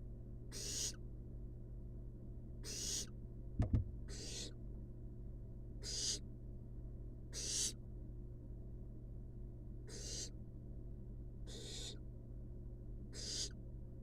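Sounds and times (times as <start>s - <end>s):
steady low hum: 0.0s - 14.0s
owl nestlings hissing: 0.5s - 1.0s, 2.6s - 3.1s, 4.1s - 4.6s, 5.8s - 6.2s, 7.3s - 7.8s, 9.9s - 10.4s, 11.5s - 12.0s, 13.1s - 13.6s
sharp knocks: 3.6s - 3.9s.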